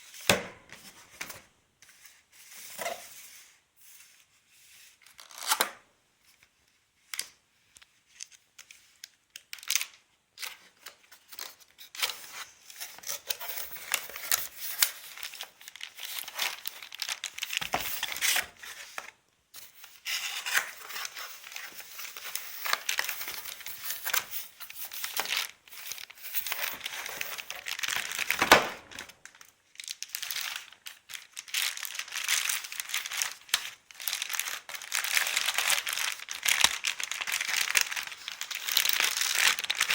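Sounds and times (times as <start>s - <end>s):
packaging tearing and crinkling: 8.2s - 39.9s.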